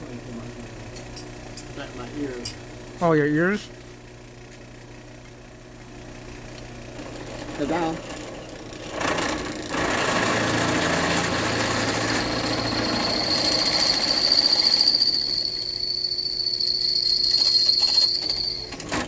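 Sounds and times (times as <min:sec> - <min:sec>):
drill press running: 0:06.9 - 0:19.0
high-pitched whine: 0:10.9 - 0:18.8.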